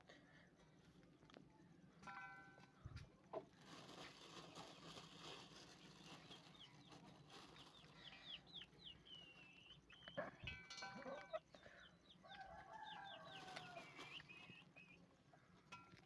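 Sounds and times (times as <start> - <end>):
chicks peeping: 11.1 - 15.0.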